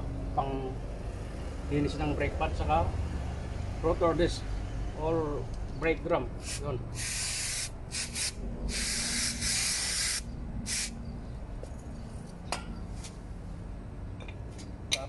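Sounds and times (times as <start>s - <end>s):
aerosol spray hissing: 6.4s - 11.0s.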